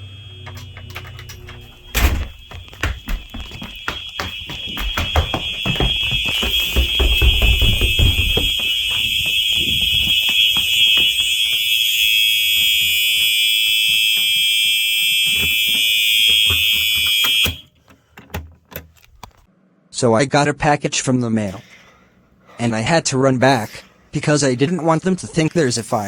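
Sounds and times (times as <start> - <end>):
horn sounding steady tone: 0.0 - 17.7
running footsteps: 1.6 - 17.5.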